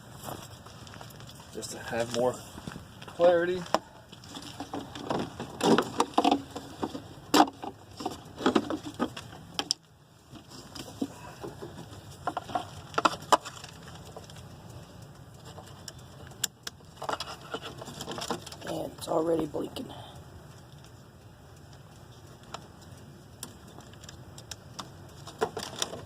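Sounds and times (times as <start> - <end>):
hands handling wires and connectors: 2.1 - 14.5, 15.2 - 18.8, 23.4 - 26.0.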